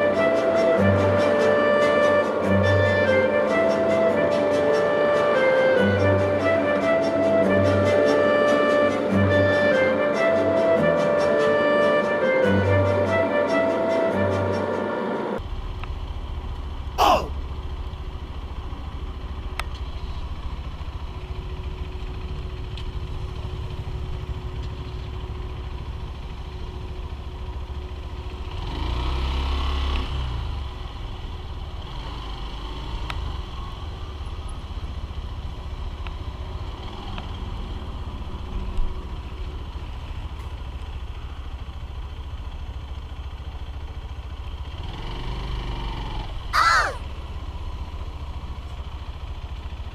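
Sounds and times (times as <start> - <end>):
motorcycle engine running: 15.4 - 49.9.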